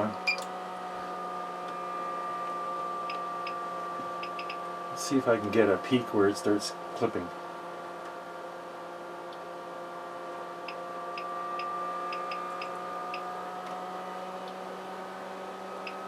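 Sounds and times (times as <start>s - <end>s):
electrical hum and whine: 0.0s - 16.0s
rising test tone: 10.7s - 13.3s.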